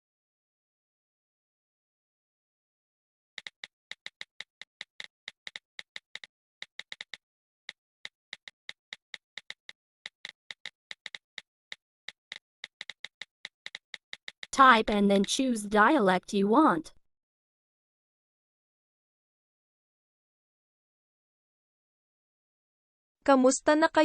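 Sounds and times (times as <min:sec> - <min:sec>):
keyboard tap clicks: 0:03.4 - 0:07.2, 0:08.3 - 0:11.5, 0:12.1 - 0:14.6.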